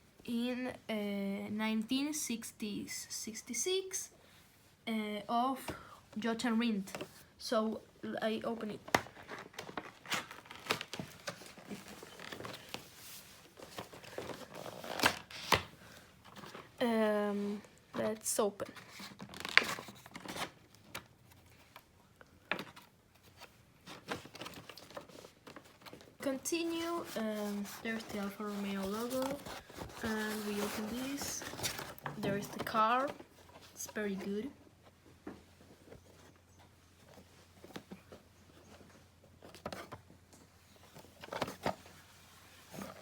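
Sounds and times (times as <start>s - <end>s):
packaging rustling and crinkling: 8.9s - 16.8s, 18.7s - 21.9s, 22.5s - 34.0s, 40.8s - 43.0s.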